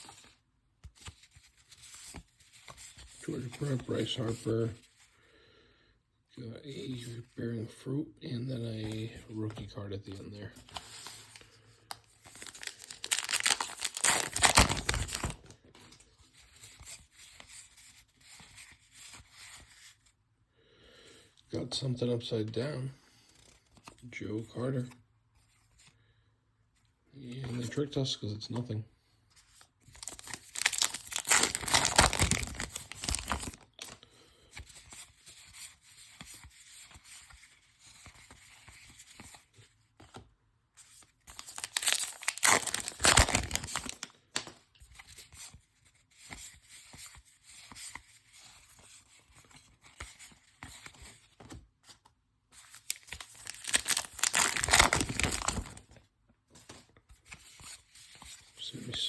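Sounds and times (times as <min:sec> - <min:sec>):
card pack wrappers tearing: 0:12.2 - 0:15.5, 0:29.9 - 0:34.0, 0:41.3 - 0:44.5, 0:52.6 - 0:55.9
wrapper crinkling: 0:12.2 - 0:15.5, 0:29.9 - 0:34.0, 0:41.3 - 0:44.5, 0:52.7 - 0:55.9.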